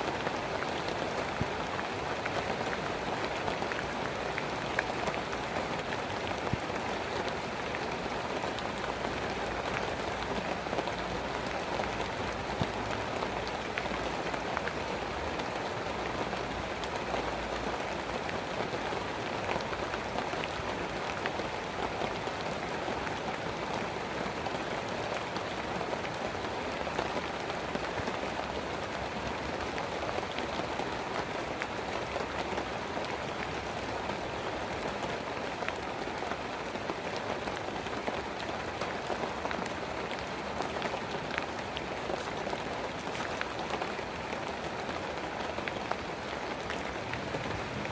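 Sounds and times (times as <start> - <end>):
steady rainfall: 0.0 - 47.9.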